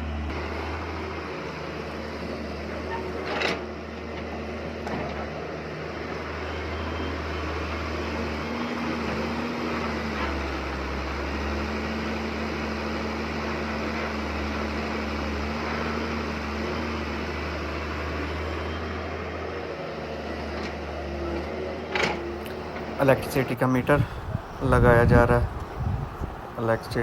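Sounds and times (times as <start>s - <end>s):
heavy machine engine droning: 0.0s - 27.0s.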